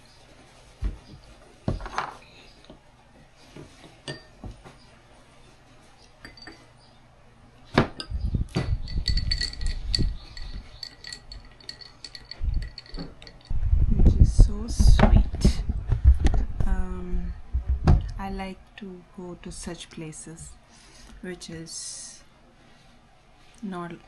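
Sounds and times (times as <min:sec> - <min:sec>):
cups and dishes clinking: 0:04.0 - 0:04.4, 0:06.2 - 0:06.7, 0:08.0 - 0:13.5.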